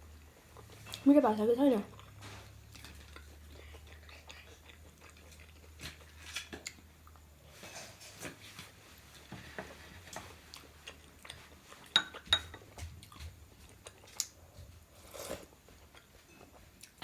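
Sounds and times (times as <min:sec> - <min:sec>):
soft chewing: 0:00.0 - 0:17.0
cutlery clinking on a dish: 0:11.9 - 0:12.6.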